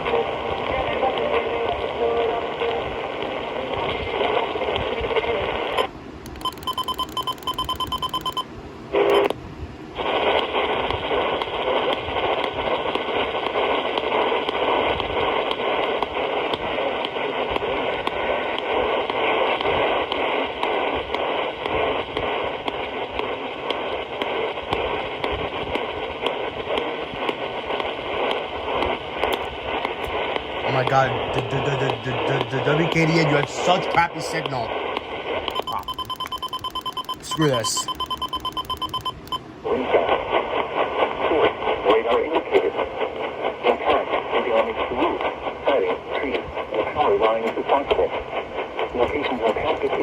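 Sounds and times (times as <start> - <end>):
radio static and hiss: 0.0 - 9.4, 10.0 - 50.0
pulsing electronic tones: 6.3 - 8.4, 35.5 - 39.4
loud static burst: 9.9 - 36.3, 36.9 - 45.8.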